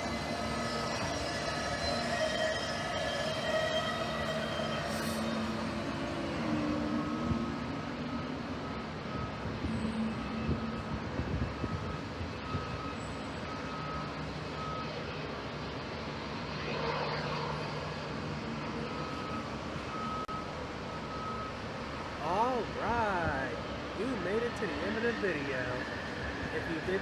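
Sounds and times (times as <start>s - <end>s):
reversing alarm beeping: 19.0s - 27.0s.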